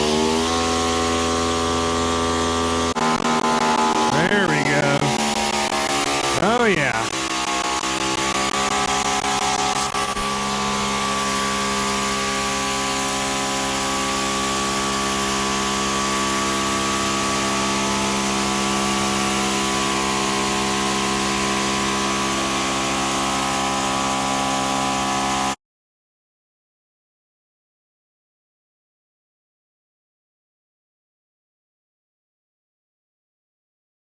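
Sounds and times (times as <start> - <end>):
pressure washer motor humming: 0.0 - 25.6.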